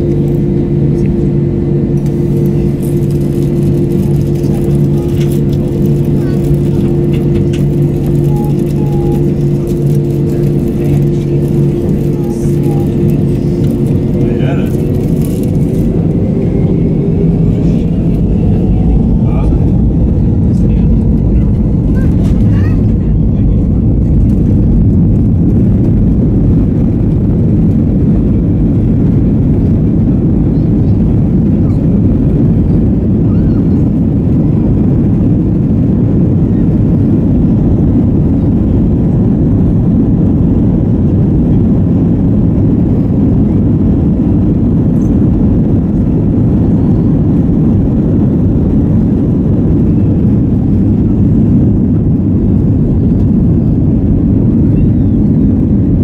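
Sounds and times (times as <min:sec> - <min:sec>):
jet engine roar: 0:00.0 - 0:56.0
rushing air: 0:09.4 - 0:56.0.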